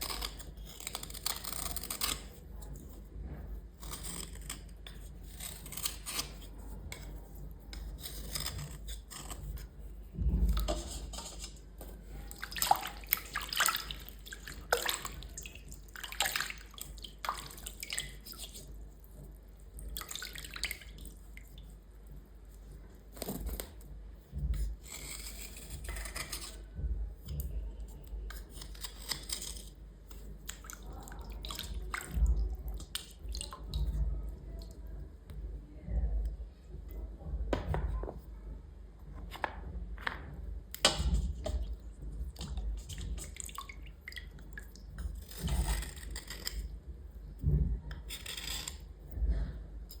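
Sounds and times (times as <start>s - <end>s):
wet scrubbing and scraping: 0.0s - 35.2s, 39.2s - 50.0s
water dripping: 12.3s - 18.6s, 42.3s - 44.9s.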